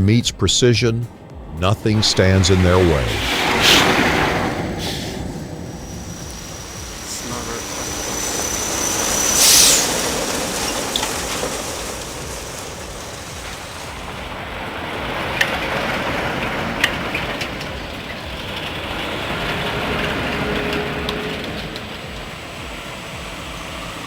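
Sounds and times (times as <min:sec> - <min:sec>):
truck engine and road noise: 0:00.0 - 0:24.0.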